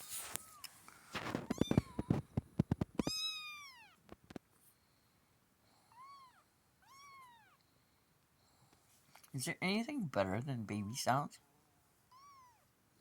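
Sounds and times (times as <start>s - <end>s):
kittens meowing: 1.3s - 2.2s, 3.0s - 4.0s, 5.9s - 7.6s, 12.1s - 12.6s.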